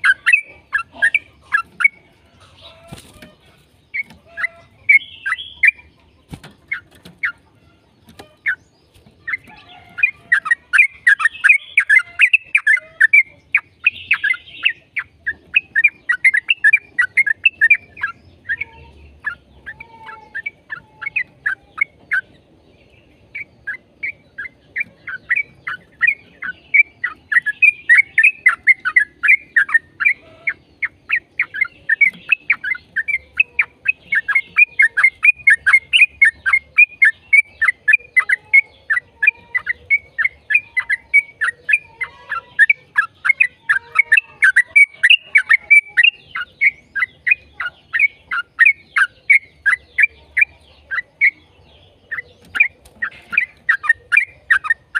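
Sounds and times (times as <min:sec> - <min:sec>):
bird rapid chirping song: 0:00.0 - 0:54.9.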